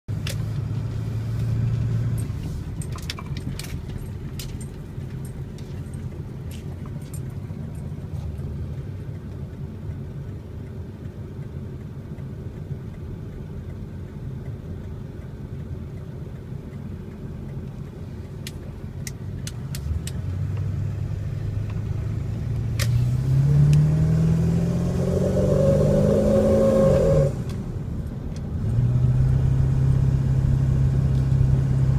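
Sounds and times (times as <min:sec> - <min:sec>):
car engine idling and revving: 0:00.1 - 0:31.9.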